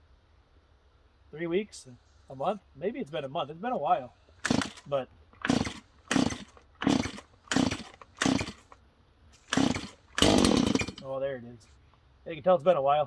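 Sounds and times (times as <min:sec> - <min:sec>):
chainsaw engine running: 0:04.3 - 0:08.8, 0:09.4 - 0:11.2
starter cord pulls: 0:04.4 - 0:08.8, 0:09.4 - 0:11.1.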